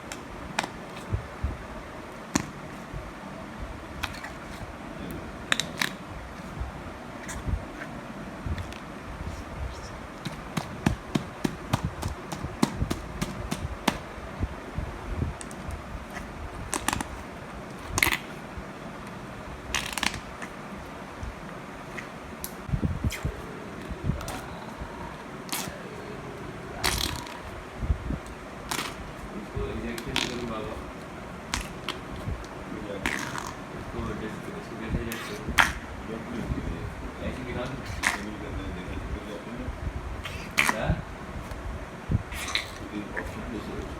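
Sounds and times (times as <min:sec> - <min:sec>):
slime squelching: 0:03.9 - 0:06.6, 0:07.2 - 0:14.1, 0:24.2 - 0:25.9, 0:37.7 - 0:38.4, 0:40.2 - 0:41.6, 0:42.3 - 0:43.4.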